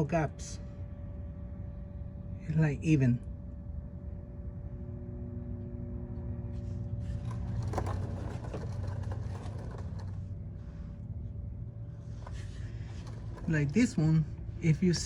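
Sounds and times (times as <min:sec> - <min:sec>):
light clicking and rustling: 0:07.2 - 0:10.3.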